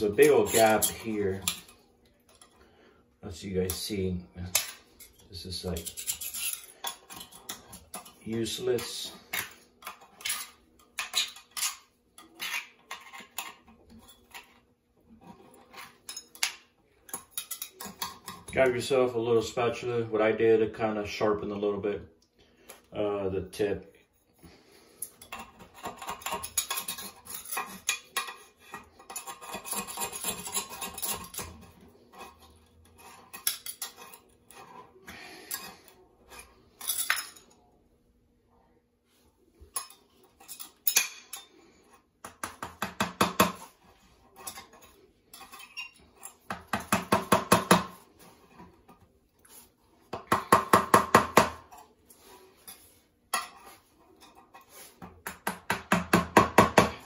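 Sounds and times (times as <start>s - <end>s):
metal spatula scraping adhesive: 0.0s - 1.7s, 5.0s - 14.6s, 25.0s - 36.6s.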